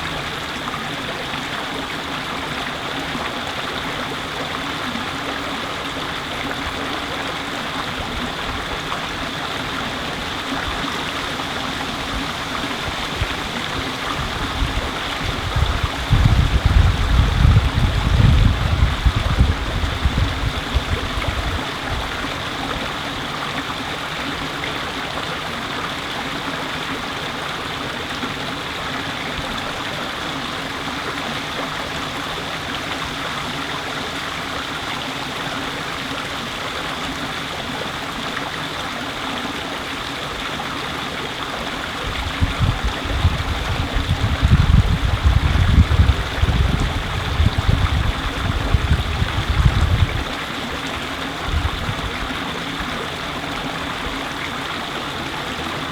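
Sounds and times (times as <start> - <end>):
flowing stream water: 0.0 - 55.9
wind buffeting microphone: 10.3 - 22.9, 41.9 - 53.0.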